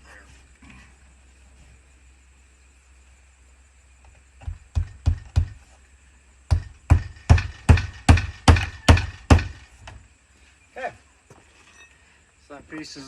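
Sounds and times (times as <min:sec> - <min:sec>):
hammer striking nails: 0:04.4 - 0:05.6, 0:06.5 - 0:09.6.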